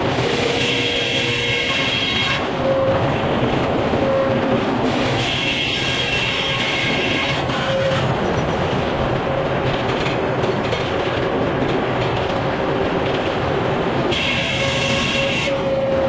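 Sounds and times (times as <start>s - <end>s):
continuous mechanical rattle: 4.4s - 15.6s.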